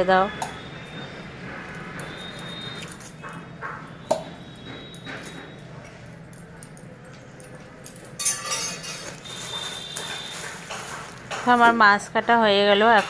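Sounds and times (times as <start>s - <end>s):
sharp knife clink: 8.2s - 9.2s.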